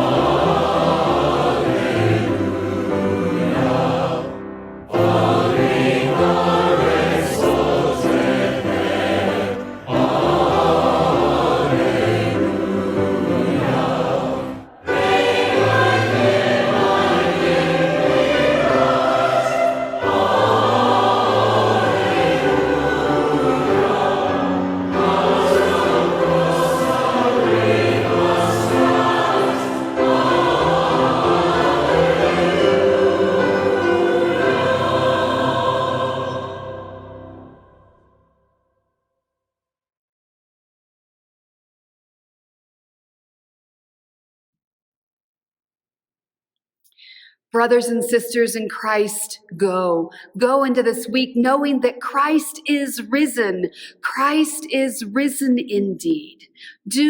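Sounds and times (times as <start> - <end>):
choir singing with music: 0.0 - 38.4, 47.0 - 57.0.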